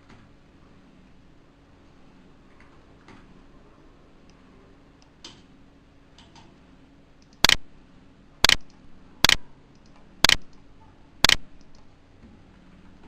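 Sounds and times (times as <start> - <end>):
computer mouse clicks: 7.2 - 7.6, 8.4 - 10.6, 11.2 - 11.9.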